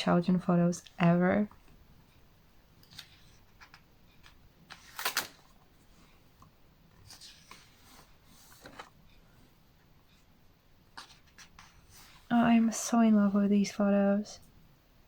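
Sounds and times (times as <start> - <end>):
paper pages rustling: 4.7 - 6.2, 7.0 - 9.0, 11.0 - 12.3.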